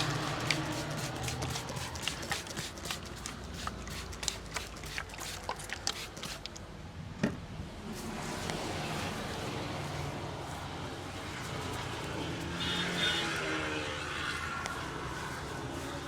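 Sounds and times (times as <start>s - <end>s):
wet rubbing: 0.0s - 6.6s, 14.1s - 16.0s.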